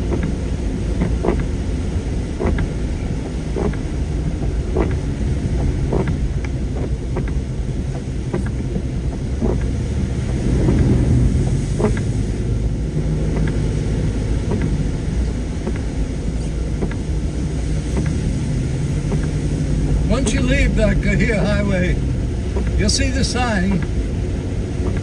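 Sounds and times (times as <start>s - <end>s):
car road and engine rumble: 0.0s - 25.0s
short taps and clicks: 14.5s - 14.8s, 19.1s - 19.4s.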